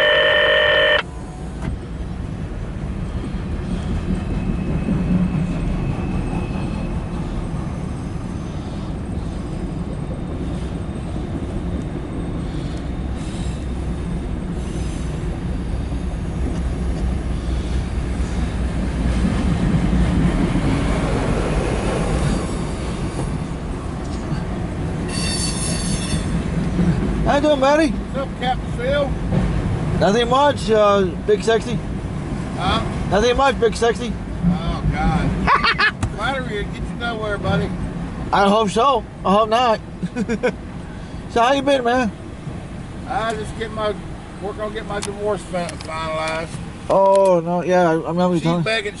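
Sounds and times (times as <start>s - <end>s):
flat electronic tone: 0.0s - 1.0s
freight train wheels rumbling: 1.0s - 49.0s.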